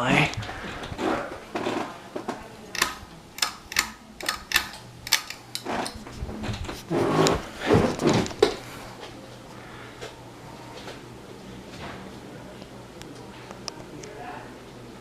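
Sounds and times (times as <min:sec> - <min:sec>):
sharp clicks and knocks: 0:02.8 - 0:06.0
muffled voices: 0:05.6 - 0:15.0.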